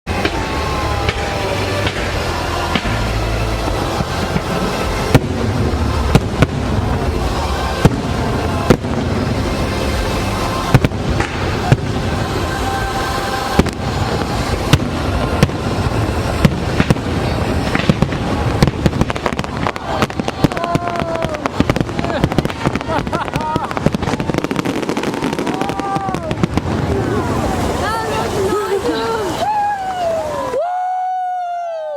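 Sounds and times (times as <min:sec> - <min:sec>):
crackling firework pops: 0:00.1 - 0:05.5, 0:10.7 - 0:11.9, 0:16.4 - 0:27.2
fireworks bangs: 0:00.1 - 0:30.6
orchestral music: 0:00.1 - 0:30.6.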